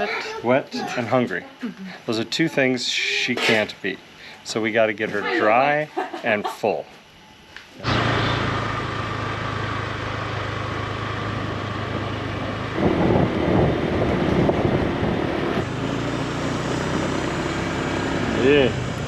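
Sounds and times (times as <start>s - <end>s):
motorbike engine running: 7.8s - 19.0s
wind noise: 12.6s - 15.7s.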